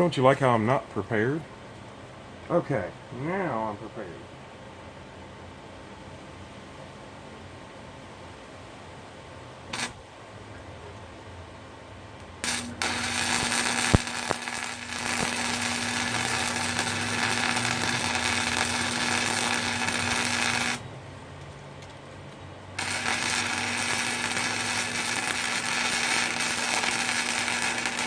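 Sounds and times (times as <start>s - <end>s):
welding arc strike: 9.7s - 10.0s, 12.4s - 20.9s, 22.8s - 28.0s
arc welder hissing and humming: 9.7s - 10.1s, 12.4s - 20.9s, 22.7s - 28.0s.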